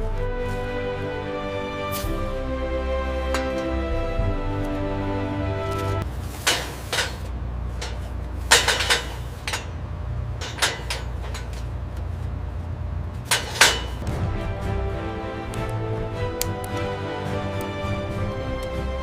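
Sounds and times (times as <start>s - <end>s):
background music: 0.0s - 6.1s, 14.0s - 19.0s
metallic clanks and clinks: 6.4s - 11.7s, 13.3s - 14.0s.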